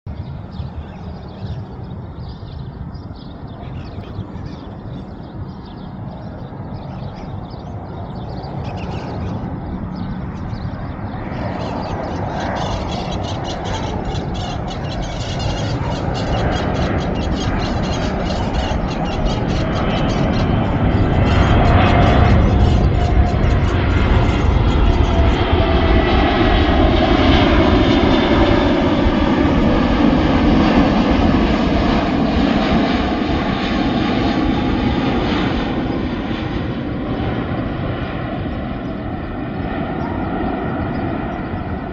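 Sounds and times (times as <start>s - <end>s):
jet airliner rumble: 0.1s - 41.9s.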